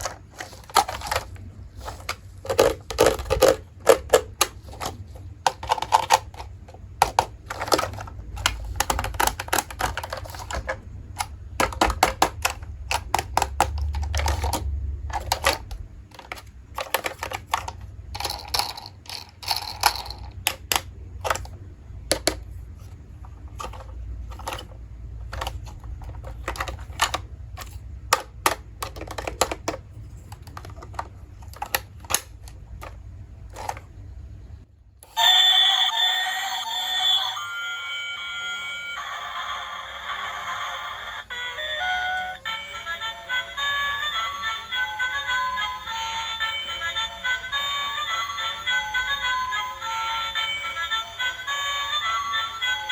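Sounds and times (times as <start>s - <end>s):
plastic toy pieces clicking: 0.0s - 22.5s, 23.3s - 33.8s
low steady hum: 0.0s - 52.9s.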